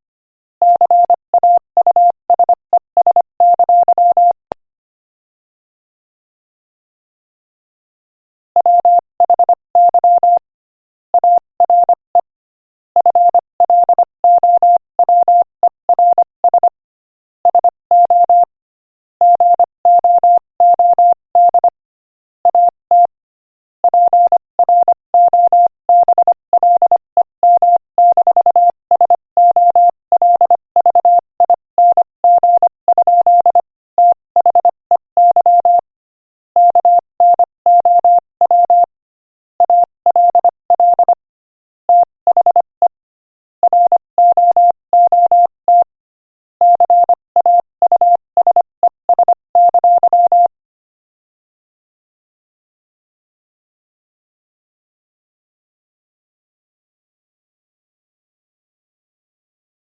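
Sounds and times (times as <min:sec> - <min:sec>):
morse code beeps: 0:00.6 - 0:04.4, 0:08.6 - 0:10.4, 0:11.2 - 0:12.3, 0:13.0 - 0:16.8, 0:17.5 - 0:18.5, 0:19.2 - 0:21.8, 0:22.5 - 0:23.1, 0:23.8 - 0:35.8, 0:36.6 - 0:38.9, 0:39.6 - 0:41.2, 0:41.9 - 0:43.0, 0:43.6 - 0:45.9, 0:46.6 - 0:50.5.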